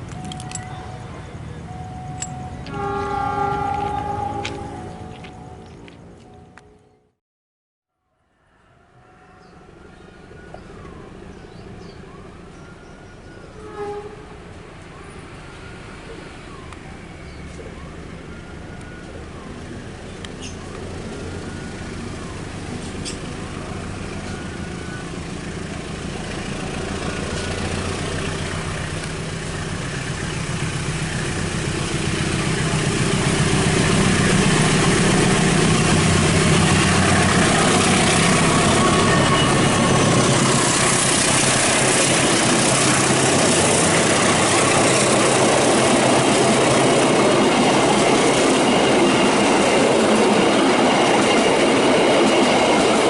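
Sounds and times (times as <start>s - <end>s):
diesel locomotive engine: 0.0s - 7.2s, 8.6s - 53.0s
train wheels rolling past: 2.7s - 6.6s, 18.3s - 53.0s.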